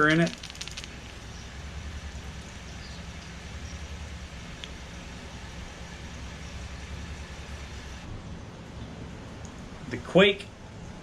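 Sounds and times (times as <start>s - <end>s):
car traffic rumble: 0.0s - 11.0s.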